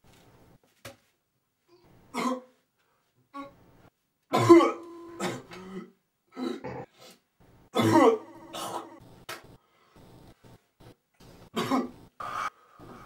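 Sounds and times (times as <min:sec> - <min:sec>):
person clearing throat: 0:02.1 - 0:02.5, 0:04.3 - 0:07.0, 0:07.7 - 0:09.0, 0:11.5 - 0:12.1
person coughing: 0:02.1 - 0:02.5, 0:04.3 - 0:06.9, 0:07.7 - 0:09.0, 0:11.5 - 0:12.0.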